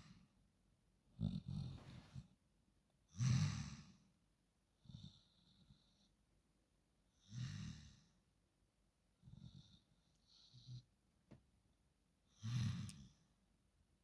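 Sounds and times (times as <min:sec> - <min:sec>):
pig snoring: 0:01.2 - 0:02.1.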